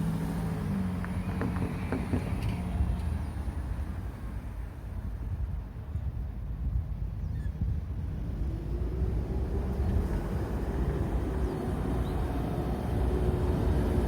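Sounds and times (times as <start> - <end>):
vehicle passing with rumble: 0.0 - 4.6, 8.0 - 14.0.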